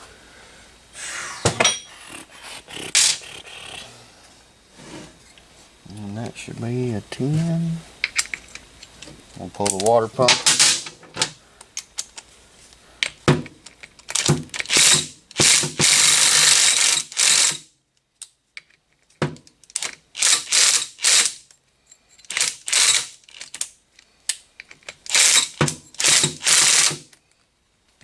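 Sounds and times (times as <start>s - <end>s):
ratchet wrench clicking: 14.1s - 17.6s, 19.8s - 21.4s, 22.3s - 23.7s, 25.1s - 27.0s.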